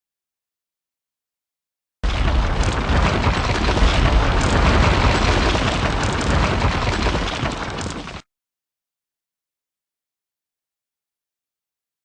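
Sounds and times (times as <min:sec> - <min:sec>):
rumbling crackling explosion: 0:02.0 - 0:08.2.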